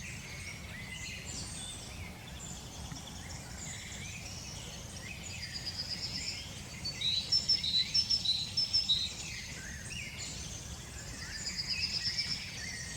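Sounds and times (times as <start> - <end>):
small birds chirping: 0.0 - 12.9.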